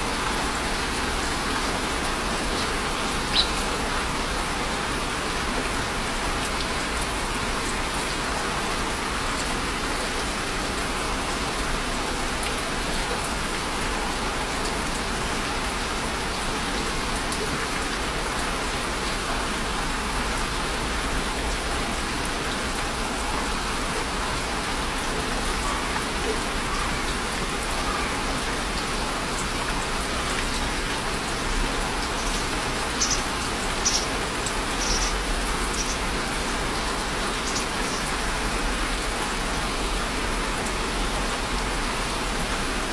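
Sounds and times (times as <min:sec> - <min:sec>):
steady rain falling: 0:00.0 - 0:42.9
sharp individual raindrops: 0:29.4 - 0:39.8.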